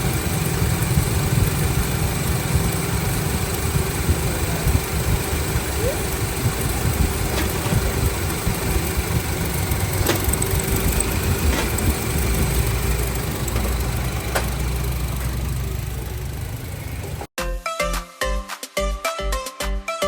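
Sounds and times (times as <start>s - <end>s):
car engine idling: 0.0s - 17.3s
music with a beat: 17.4s - 20.0s.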